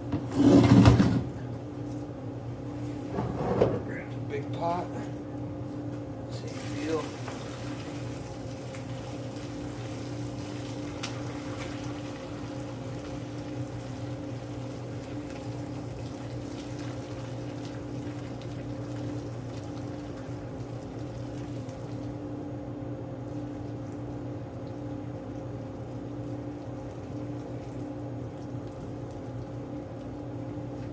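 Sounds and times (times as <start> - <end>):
liquid pouring and splashing: 6.5 - 22.2, 23.4 - 30.2.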